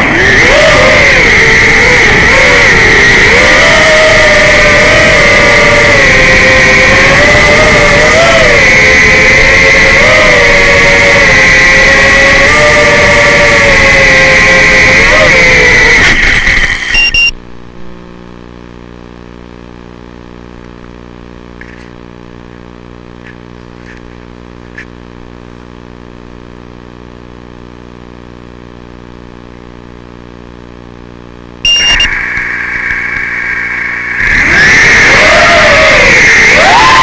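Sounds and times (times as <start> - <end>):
quadcopter motor whine: 0.0 - 17.0, 31.7 - 37.0
low hum: 0.0 - 24.0, 28.2 - 37.0.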